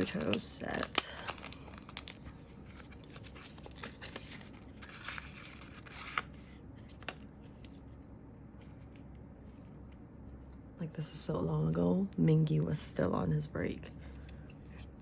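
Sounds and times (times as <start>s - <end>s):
plastic packaging rustling: 0.0s - 7.9s.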